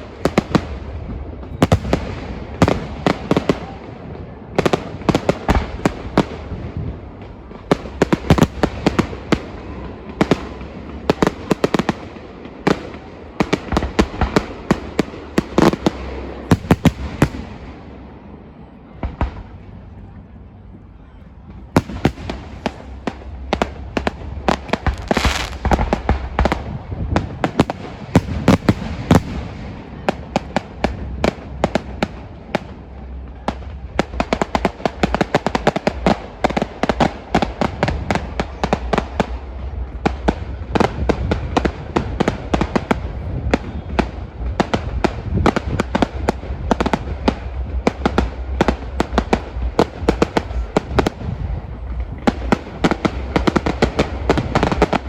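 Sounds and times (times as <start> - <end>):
fireworks bangs and crackling: 0.0 - 55.0
low rumble: 13.0 - 55.0.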